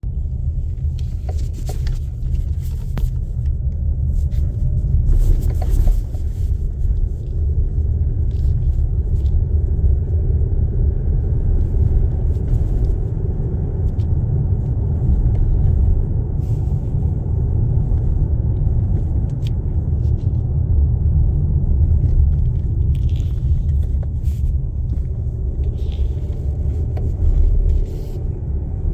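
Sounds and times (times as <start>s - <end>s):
low rumble of moving car: 0.0s - 28.9s.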